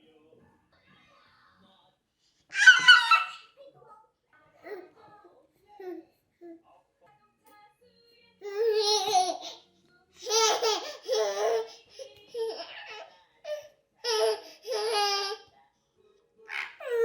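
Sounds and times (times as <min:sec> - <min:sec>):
baby squealing happily: 0:02.5 - 0:03.5.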